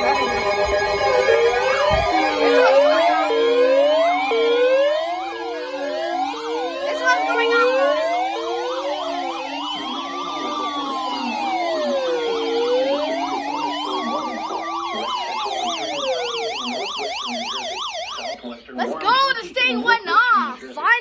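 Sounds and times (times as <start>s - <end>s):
electronic sirens wailing and yelping: 0.0s - 19.0s.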